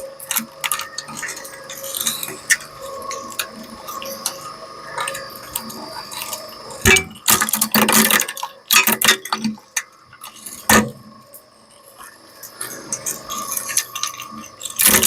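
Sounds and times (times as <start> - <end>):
faint steady hum: 0.0 - 15.0
shredder cracking and crunching: 5.0 - 11.0, 12.7 - 15.0.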